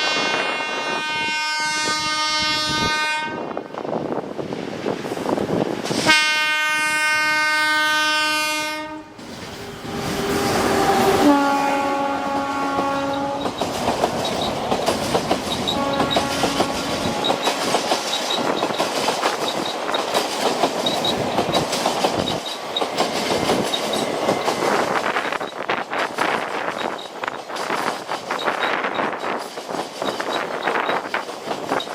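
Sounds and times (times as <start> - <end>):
train horn blasts: 0.0 - 3.6, 6.0 - 13.6, 15.7 - 18.4
train wheels clickety-clack: 9.2 - 11.4, 12.2 - 31.9.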